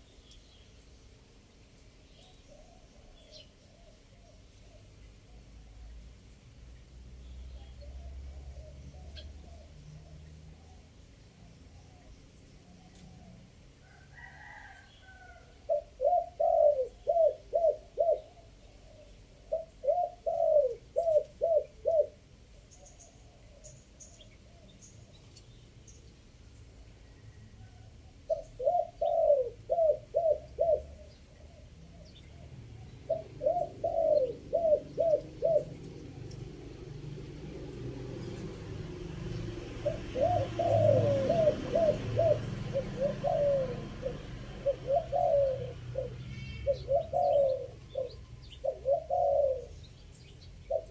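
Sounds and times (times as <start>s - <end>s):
small birds chirping: 0.0s - 13.6s, 14.9s - 50.9s
dove cooing: 7.5s - 10.9s, 11.8s - 23.8s, 27.1s - 50.9s.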